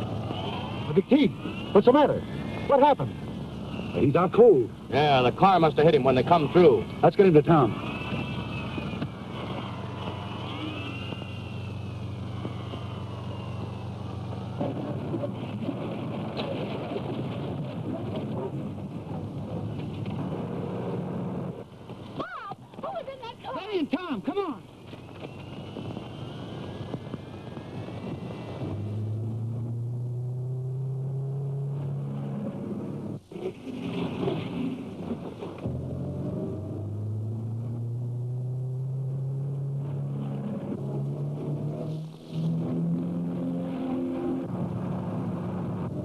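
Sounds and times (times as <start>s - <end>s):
car engine droning: 0.0s - 22.8s, 23.8s - 46.0s
car engine running: 24.3s - 46.0s.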